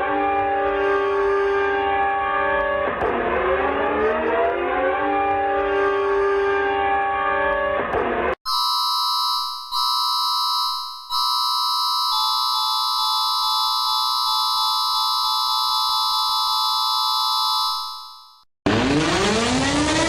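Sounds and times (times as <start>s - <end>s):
electronic emergency alarm tone: 8.5s - 18.5s.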